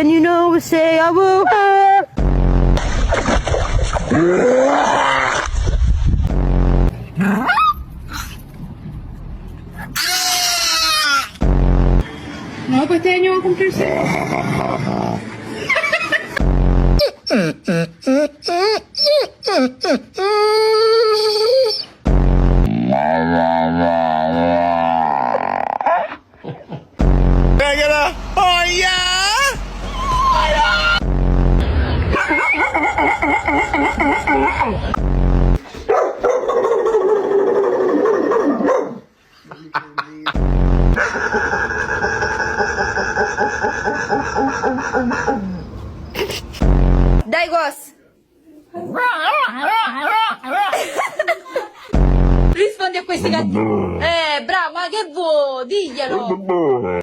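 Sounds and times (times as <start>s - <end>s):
loud low rumble: 2.2s - 3.4s, 5.5s - 7.0s, 11.4s - 12.7s, 27.0s - 35.6s, 40.4s - 41.0s, 52.0s - 52.6s
dog yowling: 7.3s - 7.9s
dog barking and howling: 32.2s - 34.5s, 35.9s - 39.1s.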